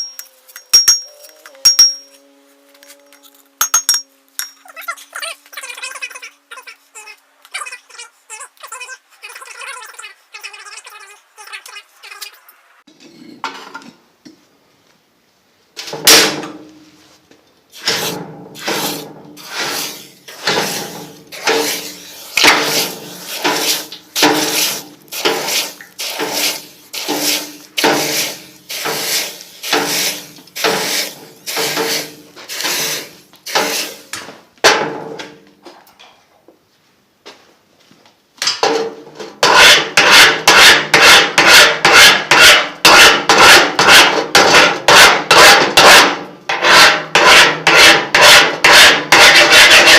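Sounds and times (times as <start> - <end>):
hammer striking steel on anvil: 0.0 - 2.2, 3.6 - 4.6.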